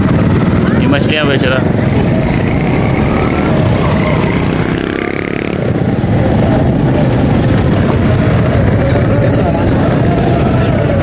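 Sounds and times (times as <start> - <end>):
motorcycle engine rumbling: 0.0 - 11.0.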